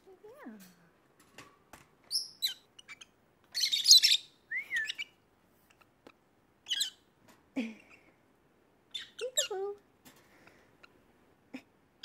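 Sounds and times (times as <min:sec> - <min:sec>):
birds chirping: 0:02.1 - 0:07.1, 0:08.9 - 0:09.7.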